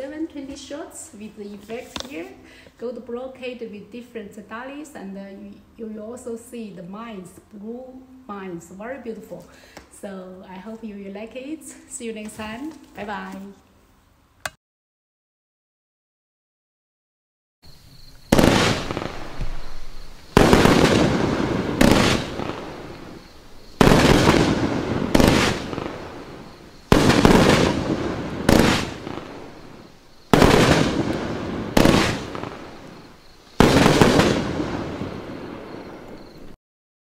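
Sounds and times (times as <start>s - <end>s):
firework crackle: 17.7s - 36.6s
firework sharp reports: 18.2s - 36.5s.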